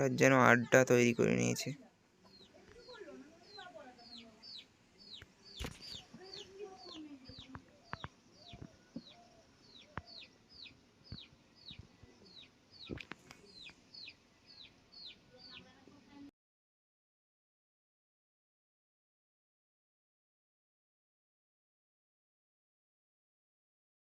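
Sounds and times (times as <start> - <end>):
chickens clucking: 0.0 - 15.7
drawn-out bird calls: 2.2 - 15.7.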